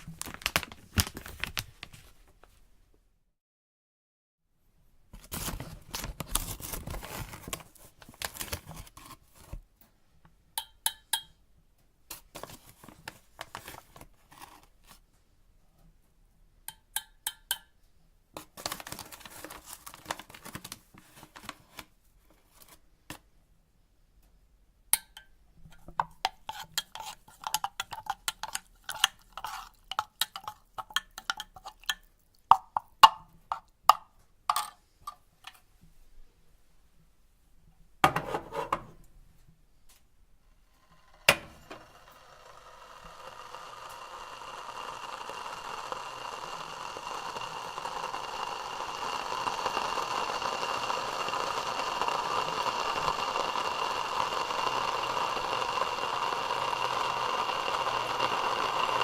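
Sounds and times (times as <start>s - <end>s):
metal spoon clinking on metal pot: 10.6s - 11.4s, 16.7s - 17.7s.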